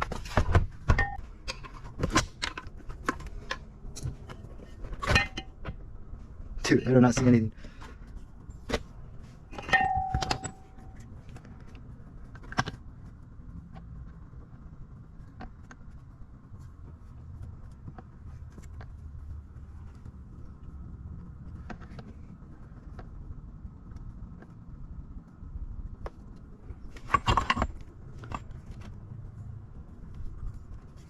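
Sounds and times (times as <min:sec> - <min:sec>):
low steady hum: 0:00.0 - 0:31.0
metal tools clinking: 0:09.5 - 0:11.0.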